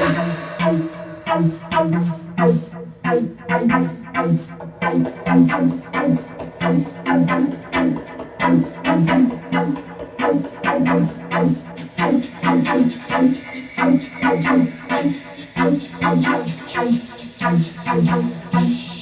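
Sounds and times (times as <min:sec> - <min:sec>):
low pulsing drone: 0:00.0 - 0:02.2.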